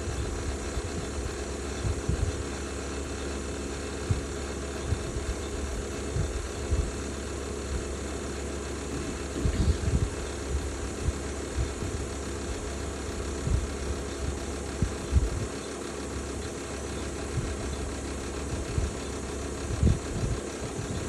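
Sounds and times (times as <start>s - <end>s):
heat pump humming: 0.0s - 21.0s
grinding noise: 7.8s - 12.0s.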